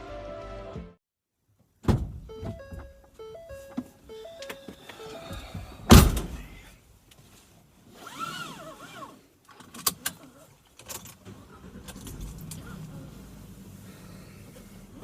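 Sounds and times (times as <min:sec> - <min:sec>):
loud thump: 0:01.8 - 0:02.3, 0:05.8 - 0:06.5.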